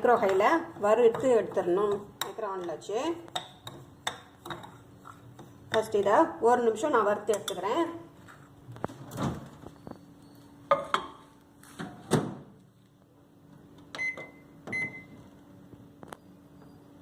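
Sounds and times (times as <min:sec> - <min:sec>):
microwave oven humming: 0:00.0 - 0:17.0
microwave beeps: 0:09.6 - 0:10.8, 0:13.9 - 0:15.3, 0:16.0 - 0:17.0.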